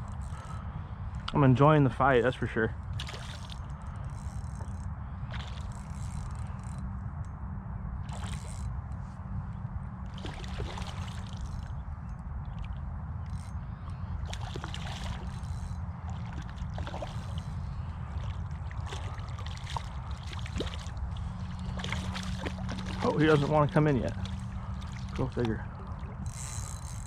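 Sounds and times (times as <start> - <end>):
water sloshing and splashing: 2.8 - 6.8, 8.0 - 8.7, 10.0 - 11.8, 12.4 - 27.0.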